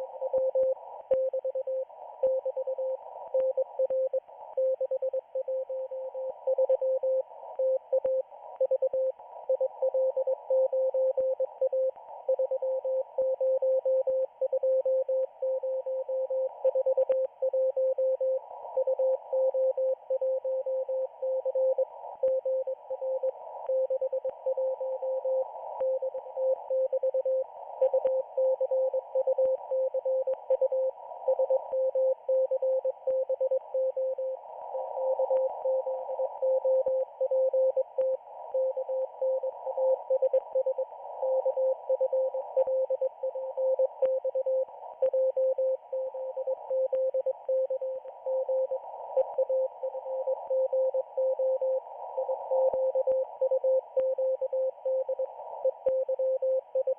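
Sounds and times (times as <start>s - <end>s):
static crackles: 19.9s - 56.9s.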